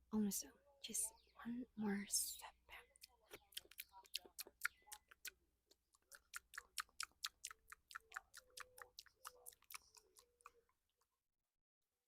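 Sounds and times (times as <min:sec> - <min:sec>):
wet mouth smacking clicks: 0:03.0 - 0:10.6.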